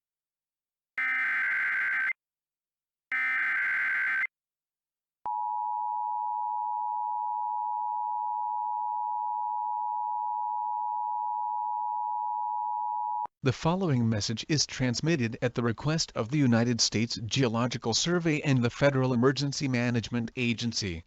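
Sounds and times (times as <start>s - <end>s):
chirping digital data bursts: 1.0s - 2.2s, 3.1s - 4.3s.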